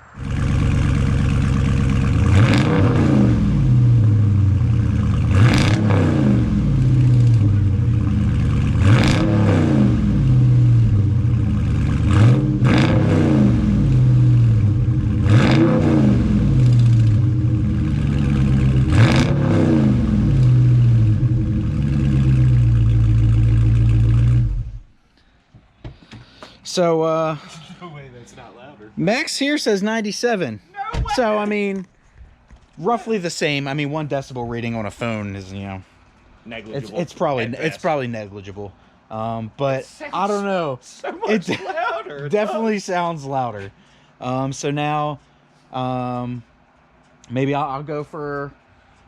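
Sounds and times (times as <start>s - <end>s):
car engine revving: 0.0s - 25.0s
loud engine idle: 0.1s - 2.3s, 20.9s - 24.8s.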